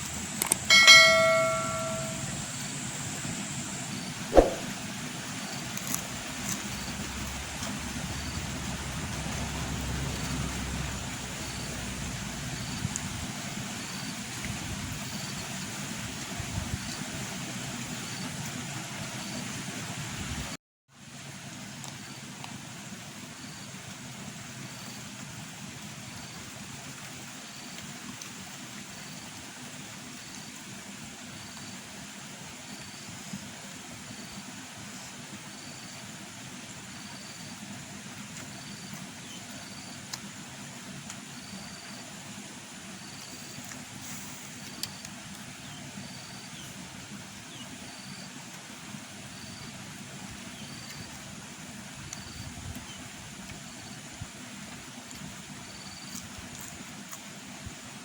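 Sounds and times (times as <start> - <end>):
rural background noise: 0.0 - 20.0, 21.0 - 58.0
short high chirp: 0.7 - 2.4, 4.3 - 4.7.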